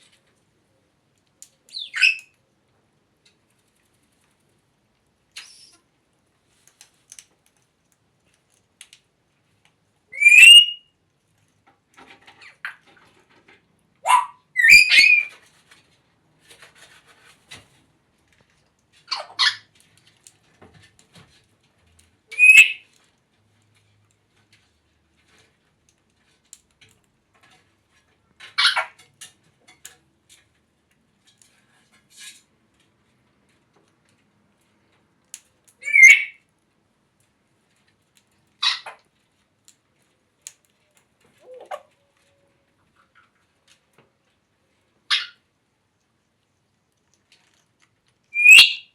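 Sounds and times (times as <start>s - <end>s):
parrot whistles and squawks: 1.7s - 2.3s, 5.4s - 5.8s, 10.1s - 10.9s, 14.0s - 15.4s, 22.3s - 22.9s, 35.8s - 36.4s, 38.6s - 39.0s, 45.1s - 45.4s, 48.3s - 48.9s.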